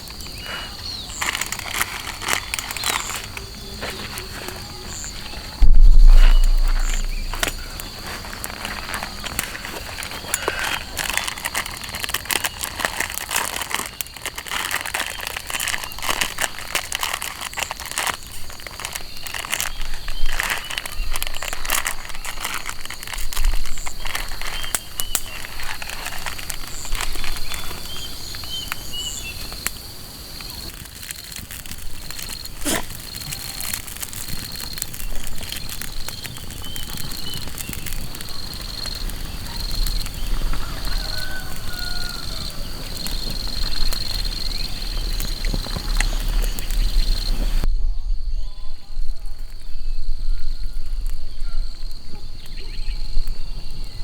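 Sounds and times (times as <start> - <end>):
crackling and rustling clicks: 0.0 - 47.7.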